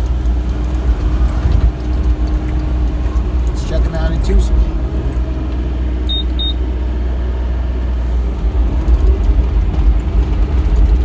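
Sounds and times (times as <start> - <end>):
excavator diesel engine running: 0.0 - 11.0
short high beeps: 6.1 - 6.6.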